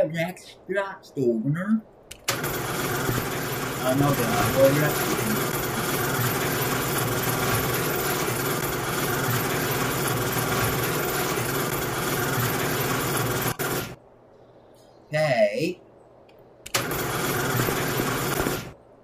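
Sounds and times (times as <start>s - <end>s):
garage door opener motor running: 2.2s - 14.0s, 16.7s - 18.8s.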